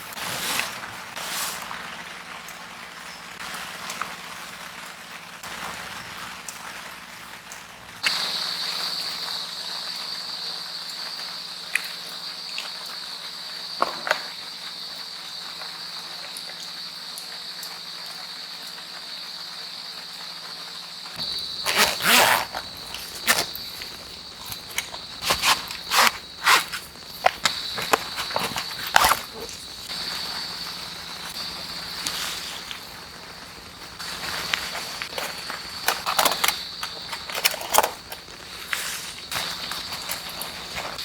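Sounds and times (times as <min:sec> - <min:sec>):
handling knocks and rustles: 0:00.0 - 0:02.3, 0:21.2 - 0:41.0
insect trill: 0:08.0 - 0:41.0.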